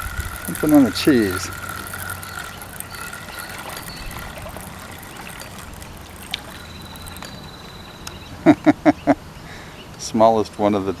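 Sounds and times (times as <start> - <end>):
thin high tone: 0.0 - 8.4
water lapping at bank: 0.0 - 8.4.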